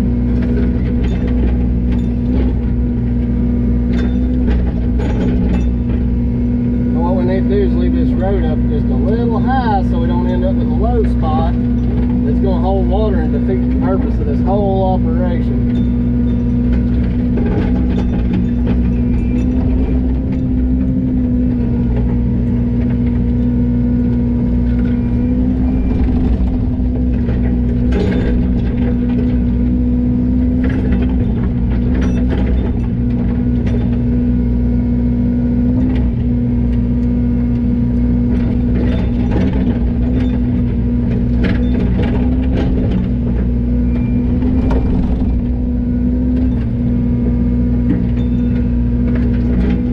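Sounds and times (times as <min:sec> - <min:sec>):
excavator diesel engine running: 0:00.0 - 0:49.9
machine clanks and knocks: 0:00.2 - 0:02.8, 0:03.8 - 0:06.2, 0:15.6 - 0:23.5, 0:24.6 - 0:34.3, 0:38.2 - 0:46.9, 0:47.8 - 0:49.9.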